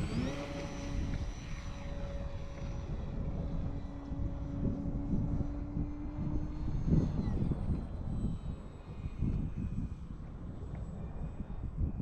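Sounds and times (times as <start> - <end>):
model plane motor whining: 0.0 - 11.6.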